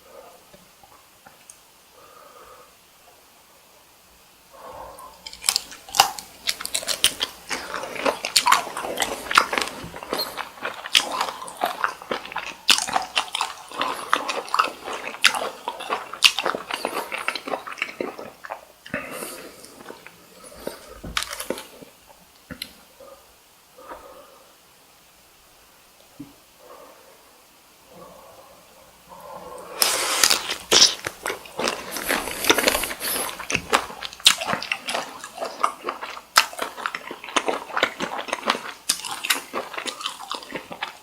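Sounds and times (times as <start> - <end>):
chewing and crunching shrimp: 5.1 - 22.8, 29.8 - 41.0.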